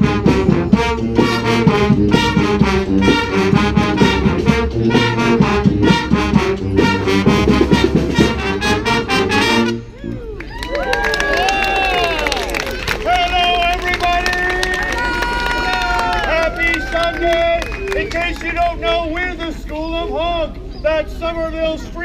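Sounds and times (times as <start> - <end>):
steady drum beat: 0.0 - 9.5
brass band playing: 0.0 - 10.3.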